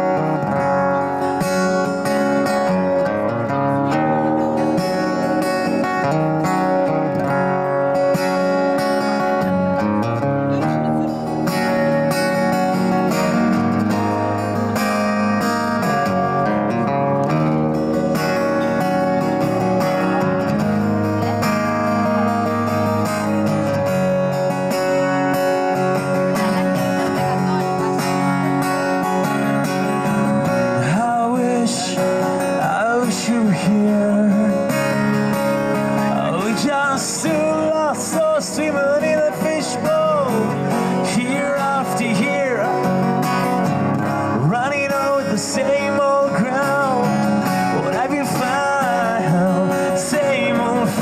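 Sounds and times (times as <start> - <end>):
acoustic guitar strumming chords: 0.0 - 51.0.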